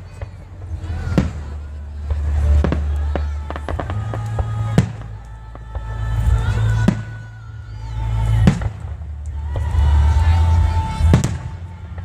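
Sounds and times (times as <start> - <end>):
fireworks booming: 0.0 - 7.4, 8.1 - 12.0
continuous low rumble: 0.0 - 12.0.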